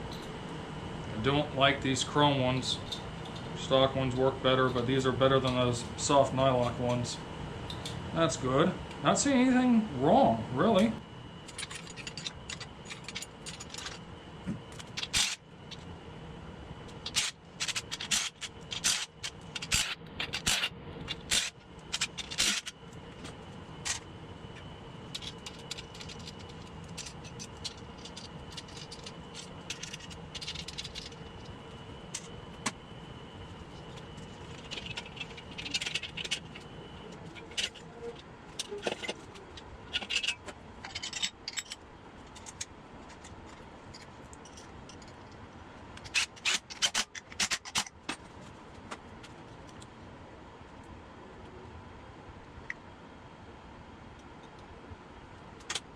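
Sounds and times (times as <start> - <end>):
steady background hum: 0.0 - 55.9
metal engine parts clinking: 11.4 - 14.0, 25.1 - 32.3, 34.1 - 36.7, 38.6 - 45.3.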